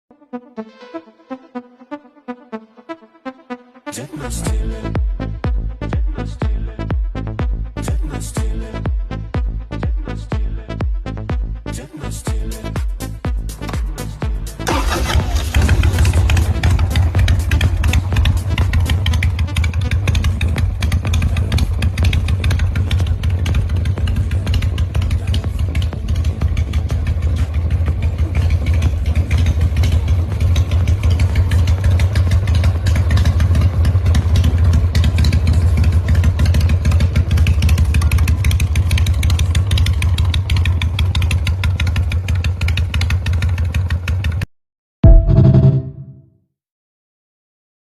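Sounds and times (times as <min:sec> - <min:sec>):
motorcycle engine idling: 0:13.5 - 0:44.4.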